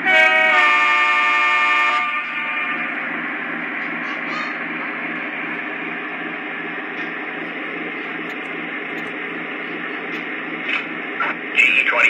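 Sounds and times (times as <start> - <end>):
diesel idle rumble through small speaker: 3.0 - 12.0.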